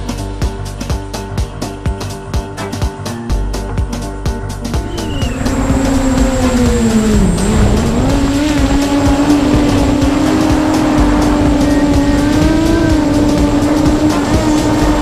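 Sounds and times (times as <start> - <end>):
background music: 0.0 - 15.0
quadcopter motors whining: 4.8 - 15.0.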